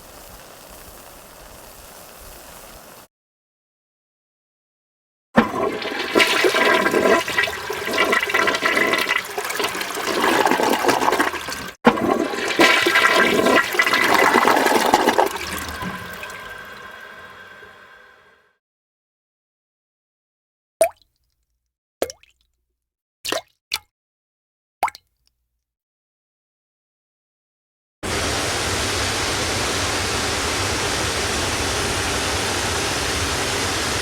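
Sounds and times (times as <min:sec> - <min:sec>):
toilet flushing: 0:05.4 - 0:18.5.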